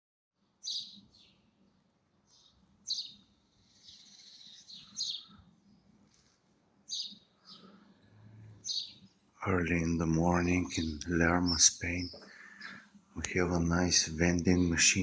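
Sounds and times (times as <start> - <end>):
bird chirping: 0.4 - 15.0
bird twittering: 0.6 - 1.4, 2.3 - 6.2, 6.9 - 9.2, 10.6 - 14.0.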